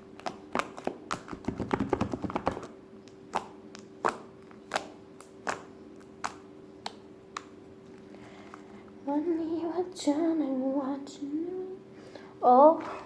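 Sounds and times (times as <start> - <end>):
slime squishing and popping: 0.1 - 8.1.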